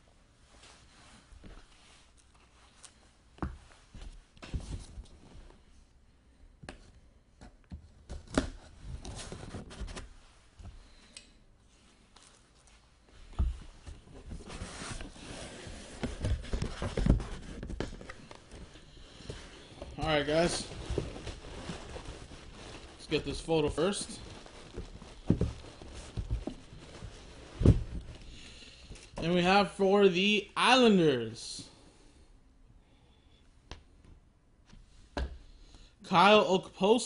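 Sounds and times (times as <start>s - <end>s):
packaging rustling: 14.2s - 28.3s.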